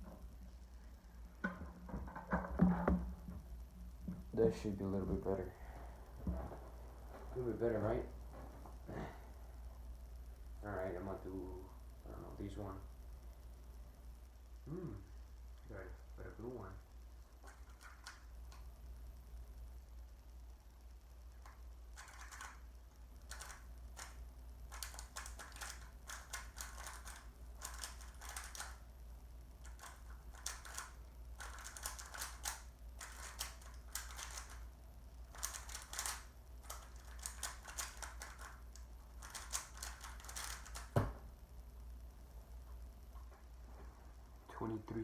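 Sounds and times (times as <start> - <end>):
plastic cube clicking: 22.0 - 22.7, 23.3 - 28.8, 29.6 - 34.6, 35.3 - 41.0
loud thump: 41.0 - 41.3.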